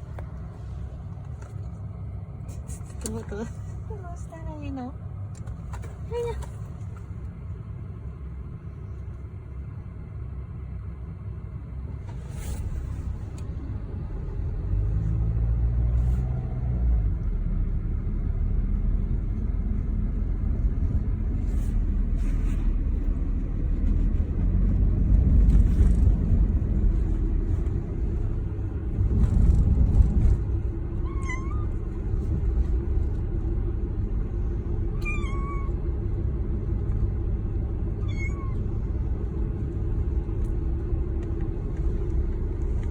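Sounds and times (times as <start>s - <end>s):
low rumble: 0.0s - 42.9s
cat meowing: 31.0s - 31.8s, 34.9s - 35.8s, 38.0s - 38.6s.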